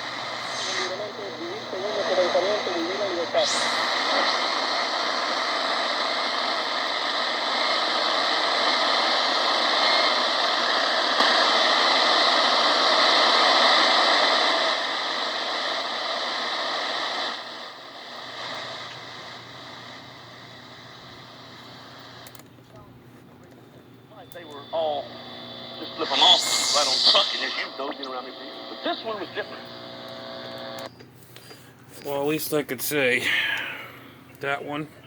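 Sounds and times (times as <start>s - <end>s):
radio static hiss: 0.0s - 30.9s, 31.9s - 35.0s.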